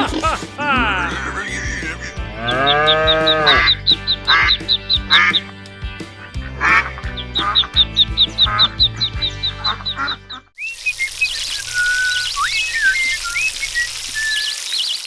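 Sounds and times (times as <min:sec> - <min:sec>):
comic background music: 0:00.0 - 0:10.5.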